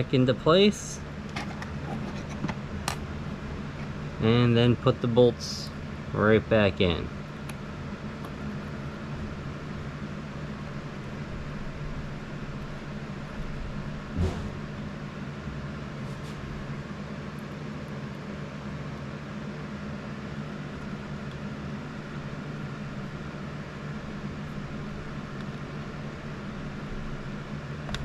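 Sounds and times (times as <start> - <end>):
low mechanical fan hum: 0.0 - 28.0
knock: 14.2 - 14.6.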